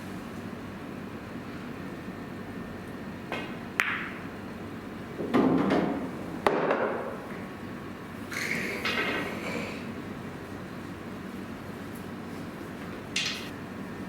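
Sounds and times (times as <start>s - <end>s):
pool balls clicking: 3.3s - 4.2s.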